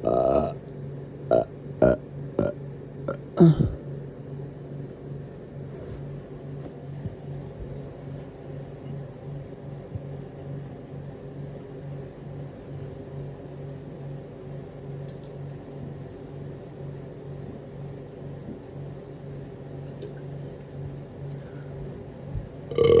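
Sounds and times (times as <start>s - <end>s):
machine humming: 21.4s - 23.0s.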